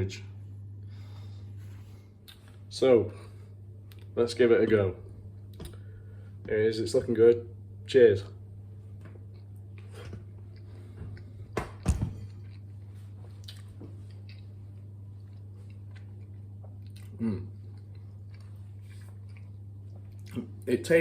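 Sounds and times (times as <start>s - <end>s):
steady low hum: 0.0s - 21.0s
person biting and chewing food: 9.2s - 20.6s.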